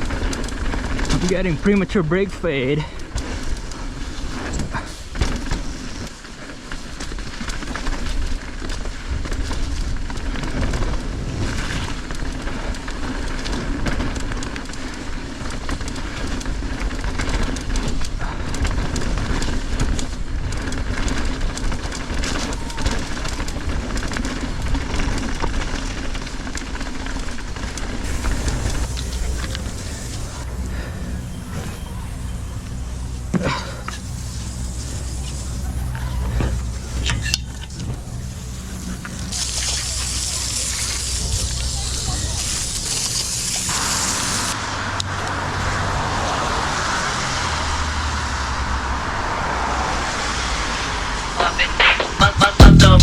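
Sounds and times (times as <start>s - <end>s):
bike tyres rumbling over dirt: 0.0s - 51.3s
bike rattling: 0.0s - 51.4s.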